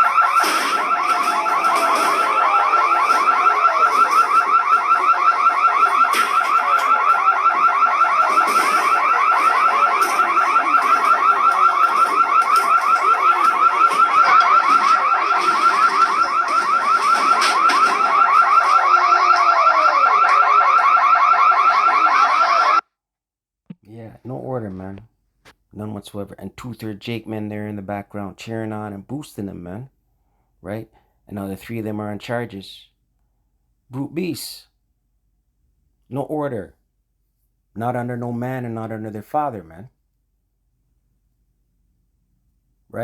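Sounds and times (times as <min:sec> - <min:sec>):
pulsing electronic alarm: 0:00.0 - 0:22.8
faint voices: 0:01.1 - 0:14.9.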